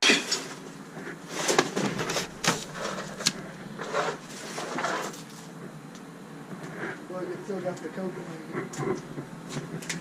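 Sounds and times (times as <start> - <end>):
scrapes and sharp knocks: 0.0 - 5.5.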